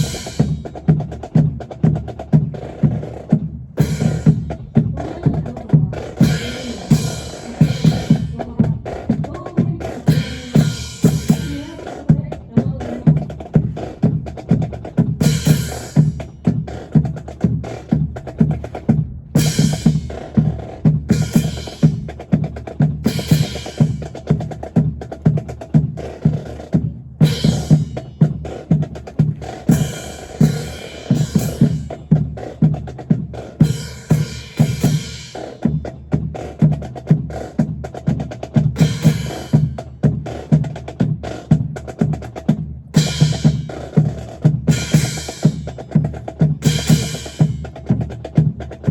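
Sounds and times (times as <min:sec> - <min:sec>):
marching snare and bass drum: 0:00.0 - 0:48.9.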